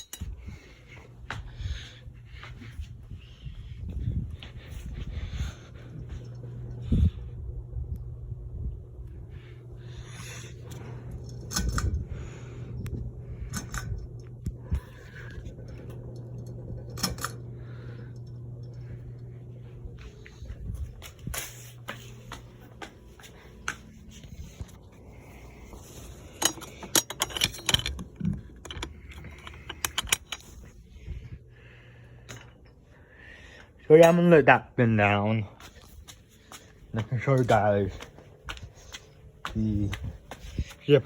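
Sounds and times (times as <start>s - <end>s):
ceiling fan motor humming: 0.0s - 41.0s
light clicks and rattles: 26.3s - 30.7s.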